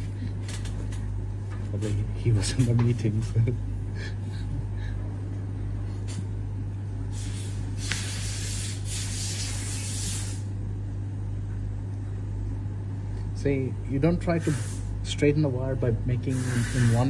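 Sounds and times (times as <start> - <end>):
steady low hum: 0.0 - 17.0
hiss: 7.1 - 10.5, 14.4 - 14.9, 16.3 - 17.0.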